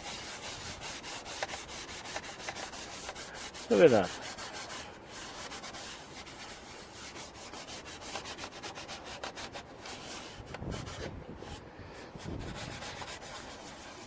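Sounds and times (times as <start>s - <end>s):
cloth rag rubbing plastic trim: 0.0s - 11.1s.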